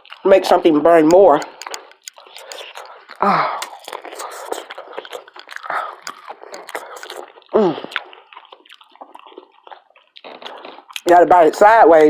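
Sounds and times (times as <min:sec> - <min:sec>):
wet chewing and smacking: 0:00.0 - 0:12.0
person humming: 0:02.7 - 0:04.7, 0:06.6 - 0:08.0.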